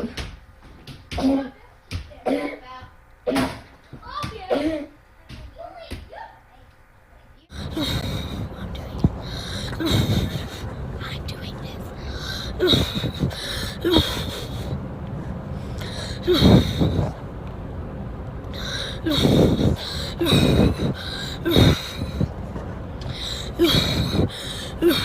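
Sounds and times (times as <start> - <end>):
person coughing: 1.1 - 1.6, 2.2 - 2.6, 3.3 - 3.7, 4.4 - 4.9.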